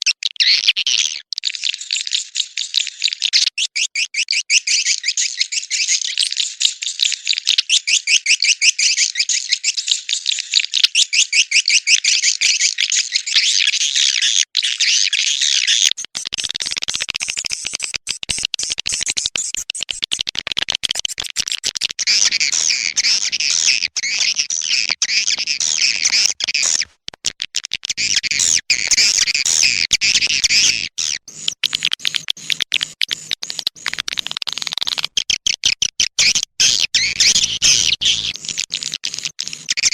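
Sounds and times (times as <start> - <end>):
swiftlets twittering: 28.0 - 35.2, 36.2 - 38.6.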